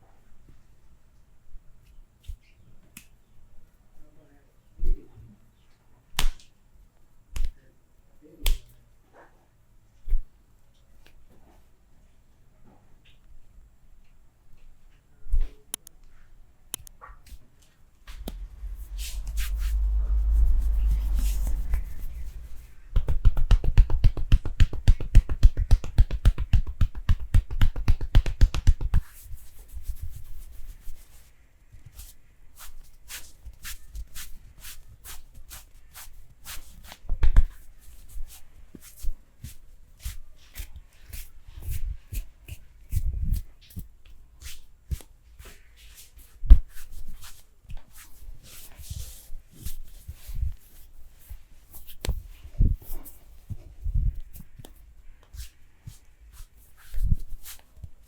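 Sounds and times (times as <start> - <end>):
hand rubbing skin: 18.2 - 29.2
slapping massage strokes: 18.2 - 30.3.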